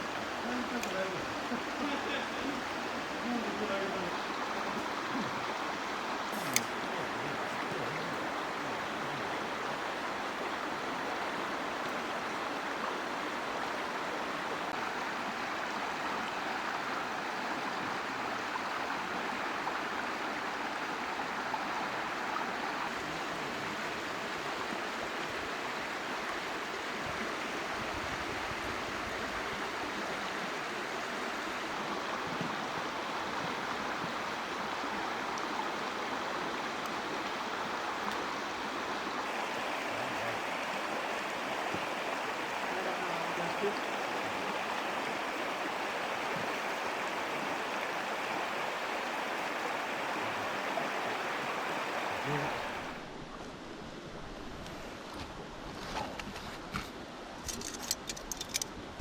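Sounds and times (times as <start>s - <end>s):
stream water rushing: 0.0s - 59.0s
sharp click: 6.4s - 6.8s.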